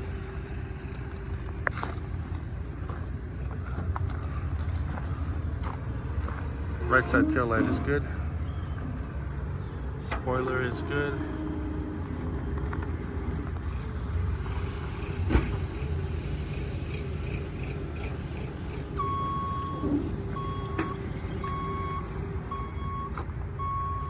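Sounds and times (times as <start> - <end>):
low rumble of machinery: 0.0 - 24.0
reversing alarm beeping: 6.3 - 12.2, 18.0 - 24.0.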